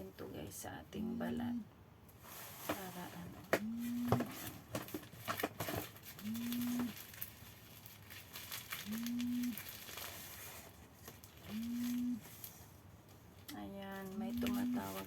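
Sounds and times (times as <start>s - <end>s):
mobile phone vibrating: 3.6s - 4.3s, 6.2s - 6.9s, 11.5s - 12.2s
plastic packaging crinkling: 4.3s - 15.0s.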